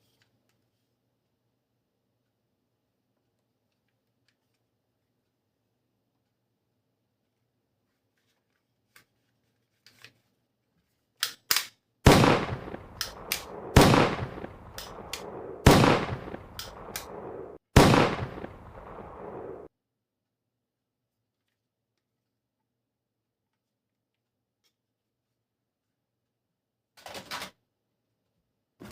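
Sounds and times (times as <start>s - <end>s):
toy gun handling clicks: 11.2s - 11.8s
toy gun shots with echo: 11.5s - 18.8s.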